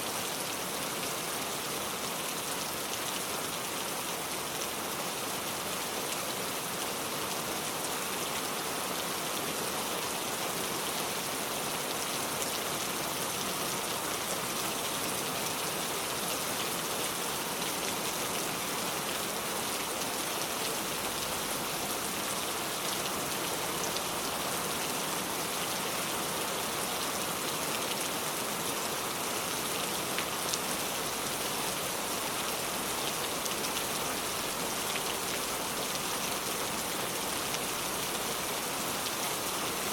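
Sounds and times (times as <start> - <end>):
steady rain hiss: 0.0 - 39.9.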